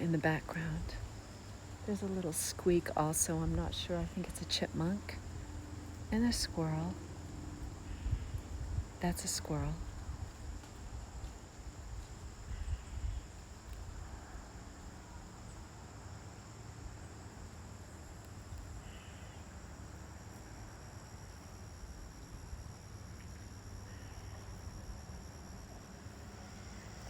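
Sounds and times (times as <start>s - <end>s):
distant road traffic rumble: 0.0s - 10.8s
insects trilling: 0.0s - 27.0s.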